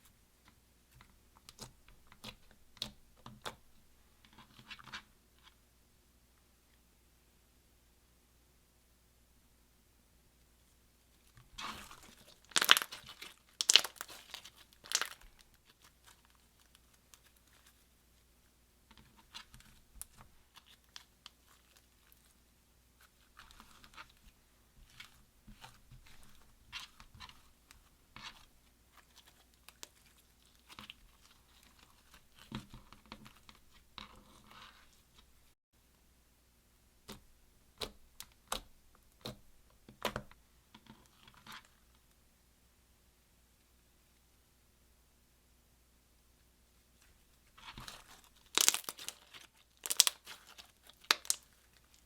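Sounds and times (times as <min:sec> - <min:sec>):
slime crackling: 0:11.6 - 0:17.8, 0:47.6 - 0:52.0.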